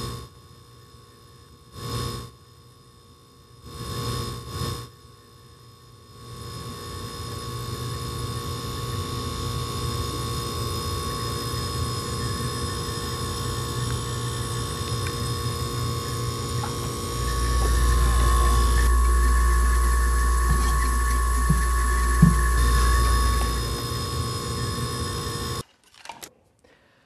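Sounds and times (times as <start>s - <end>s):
refrigerator hum: 0.0s - 25.6s
deep low drone: 11.1s - 25.6s.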